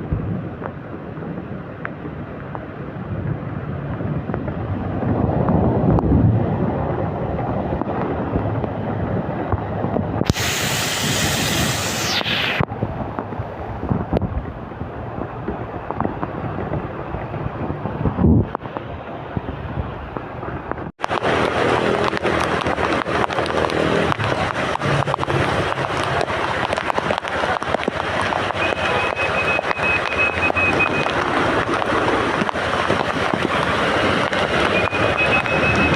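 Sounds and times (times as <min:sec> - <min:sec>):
heavy rain hissing: 0:10.2 - 0:12.7.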